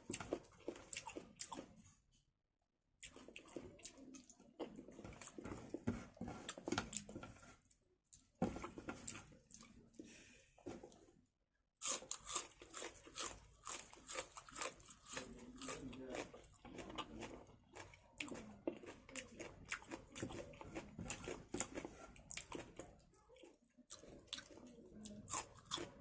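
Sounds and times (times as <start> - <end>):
wet chewing: 0.0 - 1.8, 3.0 - 7.1, 11.8 - 26.0.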